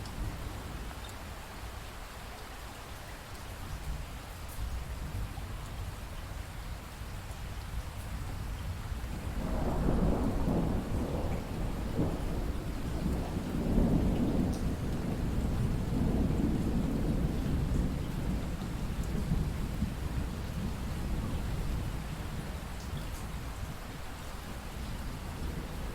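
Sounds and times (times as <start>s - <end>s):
steady rainfall: 0.0s - 25.9s
thunder rumbling: 9.2s - 23.8s.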